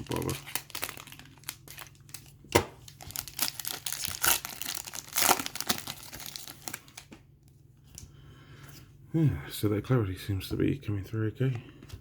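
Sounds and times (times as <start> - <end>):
plastic wrapper tearing and crinkling: 0.0 - 7.1.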